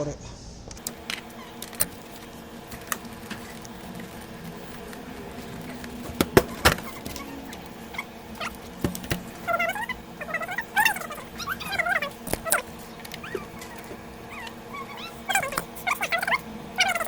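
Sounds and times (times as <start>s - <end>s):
steady hum: 0.6s - 17.0s
tools clicking and knocking: 10.8s - 14.0s.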